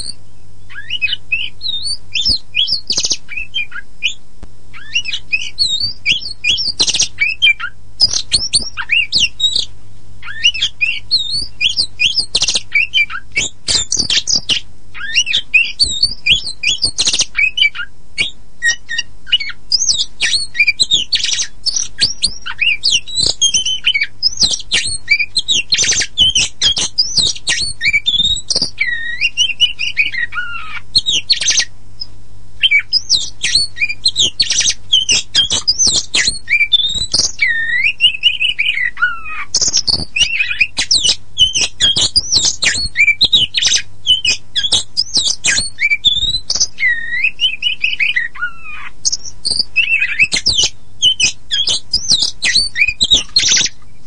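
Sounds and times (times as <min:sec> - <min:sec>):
bird singing whistled song: 0:00.0 - 0:54.0.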